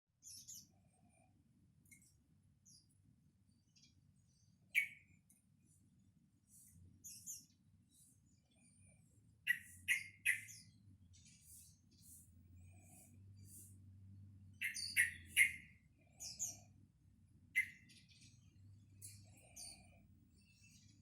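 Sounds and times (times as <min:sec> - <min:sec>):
bulbul calling: 0:09.5 - 0:10.7, 0:14.6 - 0:16.6, 0:17.6 - 0:17.9
faint high chirps: 0:14.5 - 0:16.8.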